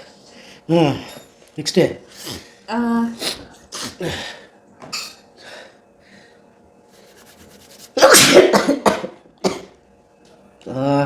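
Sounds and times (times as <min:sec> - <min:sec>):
person sneezing: 0:08.0 - 0:09.7.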